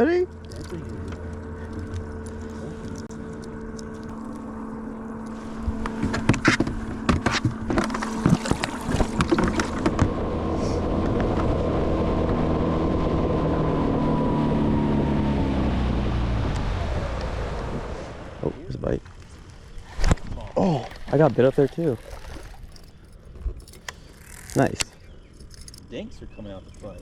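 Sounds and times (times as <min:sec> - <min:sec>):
boat motor humming and whining: 0:00.0 - 0:27.0
knocks and clatter in boat: 0:05.7 - 0:10.3.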